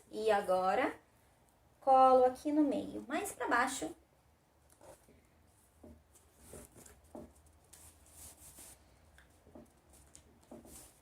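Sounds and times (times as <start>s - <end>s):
soft taps on paper: 5.8s - 7.8s, 9.1s - 10.9s
paper rustling: 6.1s - 11.0s.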